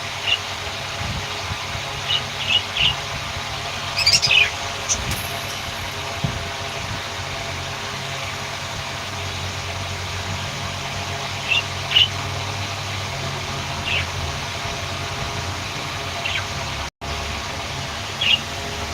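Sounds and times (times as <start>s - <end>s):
low mechanical hum: 0.0s - 18.9s
budgerigar chirps: 4.0s - 5.1s, 13.9s - 14.1s.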